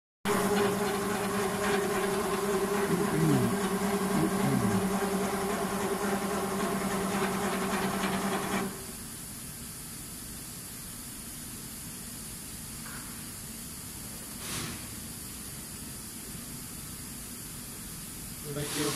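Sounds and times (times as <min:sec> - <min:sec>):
cnc router humming: 0:00.3 - 0:08.9.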